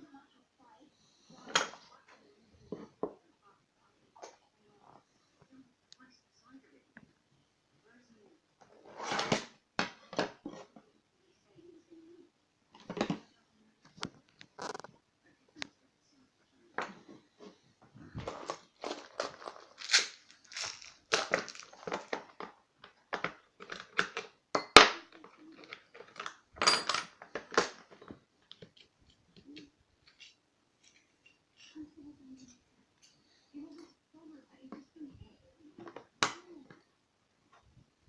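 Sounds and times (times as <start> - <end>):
small metal parts clinking: 18.3 - 22.1.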